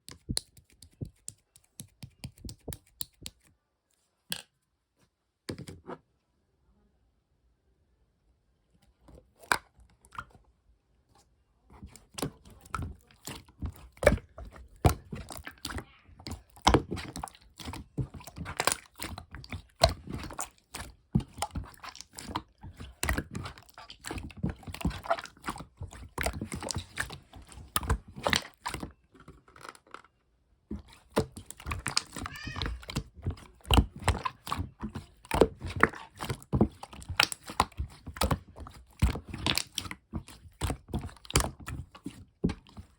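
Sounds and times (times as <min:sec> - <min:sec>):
slime squished by hand: 0:11.8 - 0:29.0, 0:30.7 - 0:42.9.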